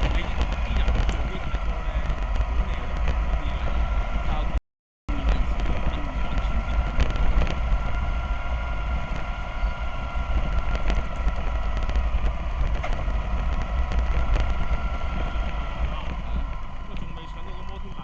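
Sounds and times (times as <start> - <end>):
bus engine rumble: 0.0 - 18.0
faint whine: 0.0 - 18.0.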